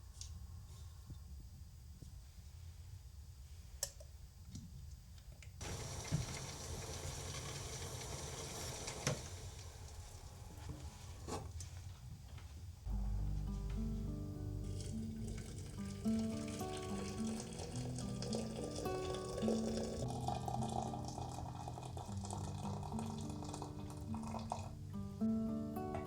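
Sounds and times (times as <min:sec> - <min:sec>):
hot oil sizzling in a frying pan: 0:05.6 - 0:09.8.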